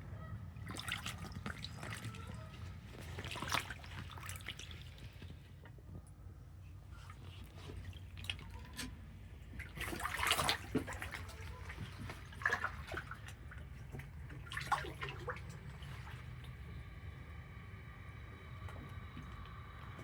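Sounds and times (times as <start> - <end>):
water sloshing and splashing: 0.2 - 20.0
steady low rumble: 8.9 - 20.0.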